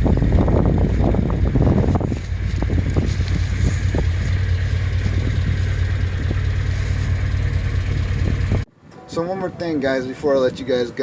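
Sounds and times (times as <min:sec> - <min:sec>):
car engine running: 0:00.0 - 0:08.7.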